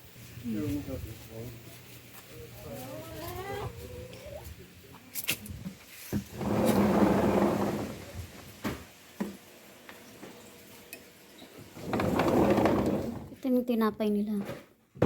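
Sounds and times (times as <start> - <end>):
scraping or rustling: 5.2 - 8.1, 11.7 - 13.4.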